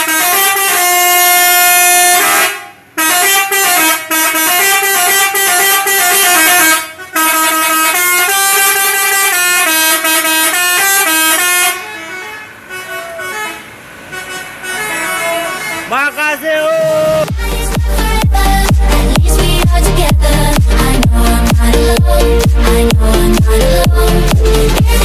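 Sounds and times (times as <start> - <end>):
electric trumpet horns playing a tune: 0.0 - 16.0.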